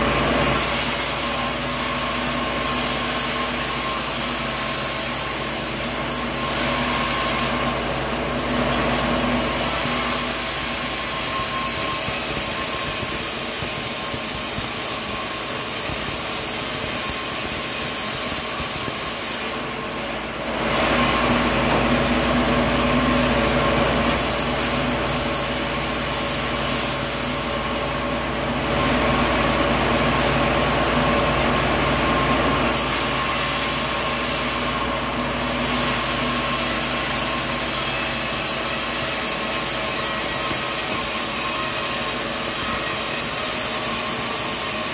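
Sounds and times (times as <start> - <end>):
sawmill machinery droning: 0.0 - 44.9.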